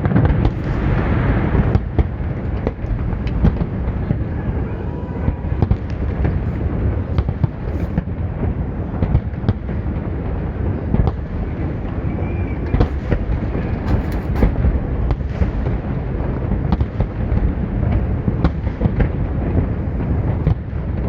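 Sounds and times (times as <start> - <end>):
firework bangs and crackles: 0.0 - 21.0
rumble of bursting aerial shells: 0.1 - 8.8.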